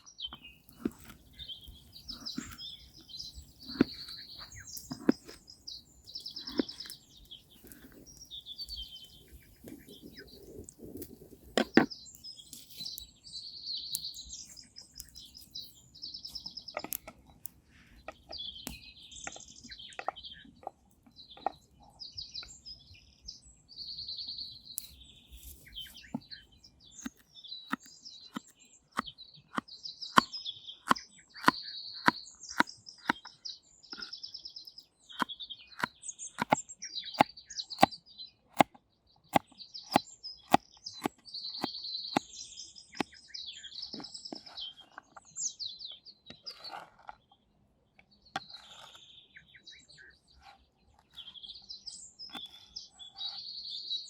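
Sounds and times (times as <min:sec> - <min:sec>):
songbird trilling: 0:00.0 - 0:17.1, 0:21.4 - 0:47.4
sharp clicks and taps: 0:35.2 - 0:36.6.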